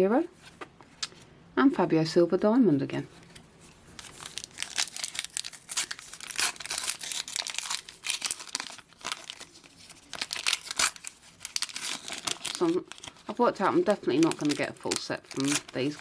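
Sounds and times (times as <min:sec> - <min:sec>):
plastic wrapper crinkling and tearing: 0:03.3 - 0:16.0.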